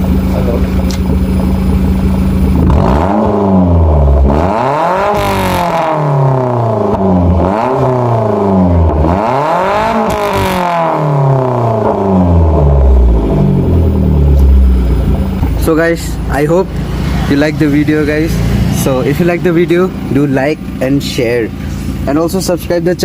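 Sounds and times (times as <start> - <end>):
car engine revving: 0.0 - 23.0.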